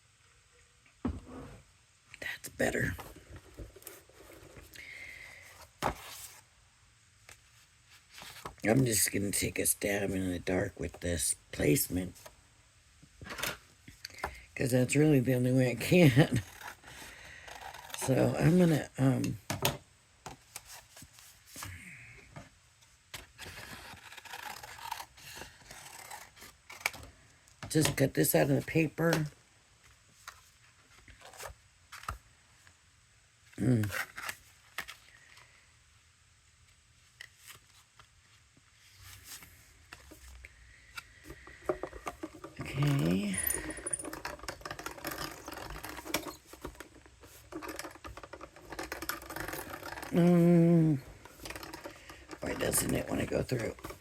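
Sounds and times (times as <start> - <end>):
paper rustling and scraping: 5.4 - 6.5, 7.4 - 8.6, 23.1 - 27.1, 37.1 - 50.4.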